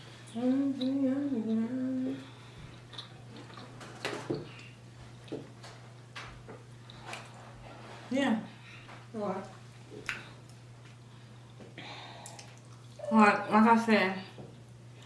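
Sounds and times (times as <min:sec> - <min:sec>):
low electrical hum: 0:00.0 - 0:15.0
person humming: 0:00.3 - 0:02.3
wet mouth clicks chewing: 0:02.8 - 0:03.7.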